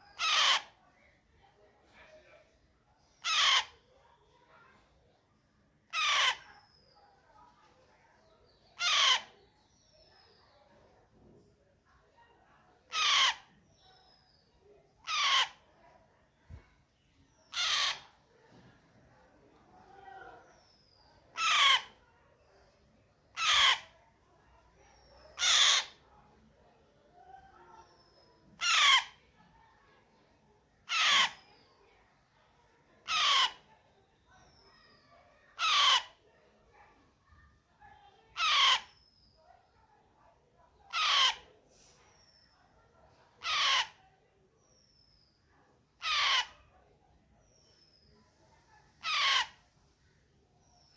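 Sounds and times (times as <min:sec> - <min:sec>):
parrot chick squawking: 0:00.1 - 0:00.7, 0:03.2 - 0:03.7, 0:08.8 - 0:09.3, 0:12.9 - 0:13.4, 0:15.0 - 0:15.6, 0:17.5 - 0:18.1, 0:21.4 - 0:21.9, 0:23.4 - 0:23.8, 0:25.4 - 0:26.0, 0:28.6 - 0:29.1, 0:30.9 - 0:31.4, 0:33.1 - 0:33.6, 0:35.6 - 0:36.2, 0:38.4 - 0:39.0, 0:40.9 - 0:41.5, 0:43.4 - 0:44.0, 0:46.0 - 0:46.6, 0:49.0 - 0:49.6.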